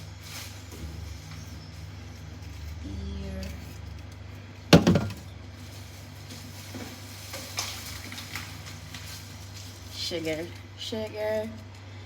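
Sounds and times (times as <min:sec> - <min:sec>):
sharp clunk in a fridge: 0:04.8 - 0:05.3.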